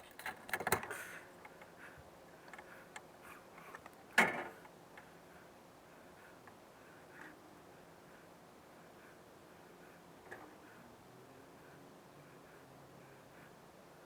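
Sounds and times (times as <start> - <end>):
handling clicks and knocks: 0.0 - 1.6.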